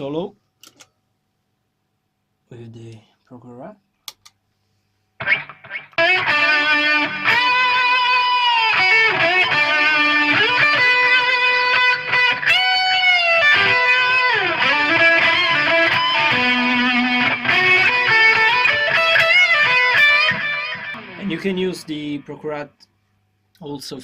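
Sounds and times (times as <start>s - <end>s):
distorted electric guitar solo: 5.2s - 21.6s.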